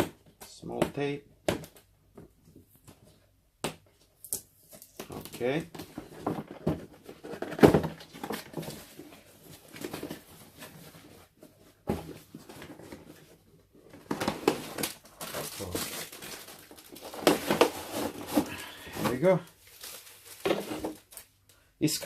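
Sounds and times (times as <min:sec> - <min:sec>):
cardboard box rustling: 0:05.8 - 0:21.2.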